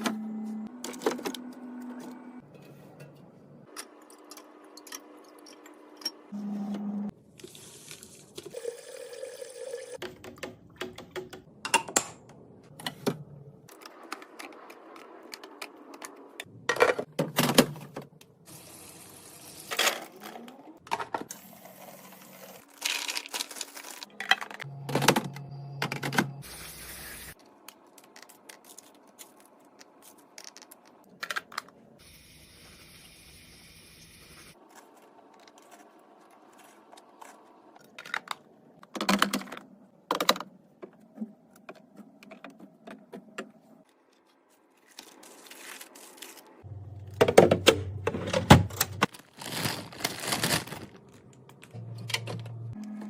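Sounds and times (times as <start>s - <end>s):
containers clicking and clattering: 37.8s - 41.0s.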